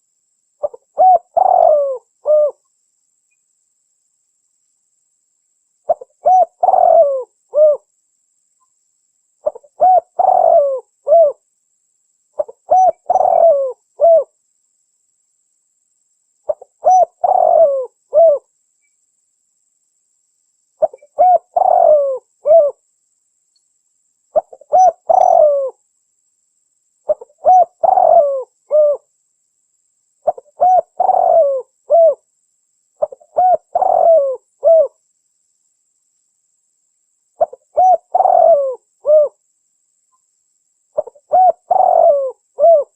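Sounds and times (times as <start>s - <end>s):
dove cooing: 0.6s - 2.6s, 5.9s - 7.9s, 9.4s - 11.4s, 12.4s - 14.3s, 16.5s - 18.5s, 20.8s - 22.8s, 24.4s - 25.8s, 27.1s - 29.1s, 30.2s - 32.2s, 33.0s - 35.0s, 37.4s - 39.4s, 41.0s - 42.9s.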